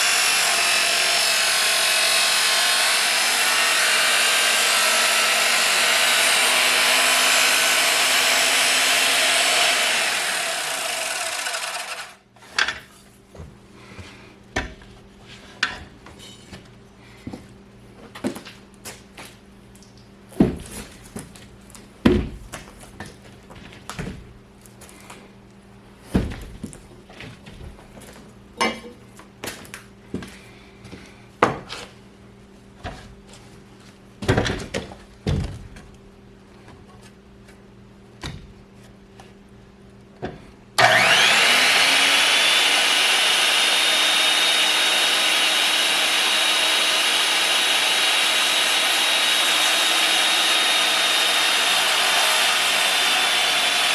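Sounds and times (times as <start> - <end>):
circular saw cutting wood: 0.0 - 12.2, 40.8 - 53.9.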